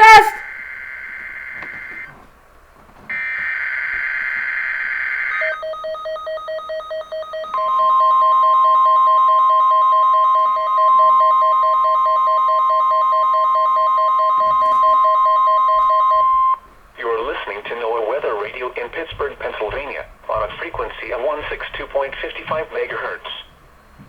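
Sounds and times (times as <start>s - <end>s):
steady warning alarm tone: 0.5s - 2.1s, 3.1s - 23.6s
fast pulsing beep: 5.4s - 16.6s.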